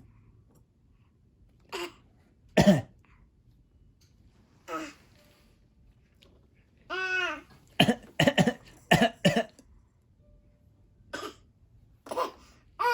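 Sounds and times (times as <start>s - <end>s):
person coughing: 2.6s - 2.9s, 7.8s - 9.6s, 11.2s - 11.4s.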